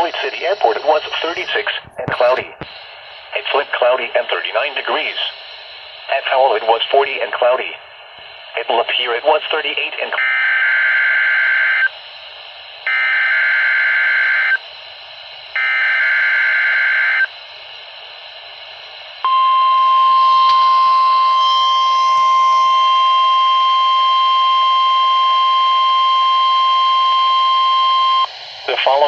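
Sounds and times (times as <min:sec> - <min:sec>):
warbling digital data tones: 0:00.0 - 0:02.6
steady weather alert tone: 0:00.0 - 0:29.0.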